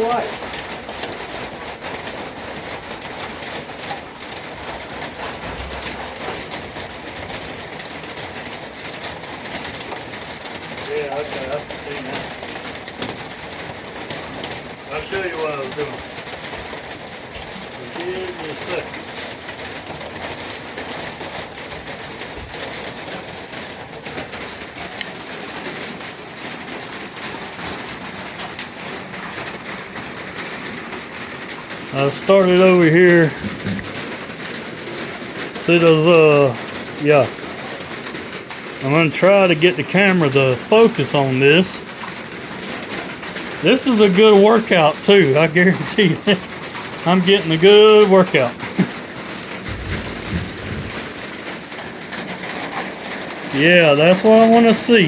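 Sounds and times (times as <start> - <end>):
sandpaper scratching on metal: 0.0 - 7.0, 33.2 - 34.1, 49.7 - 51.2.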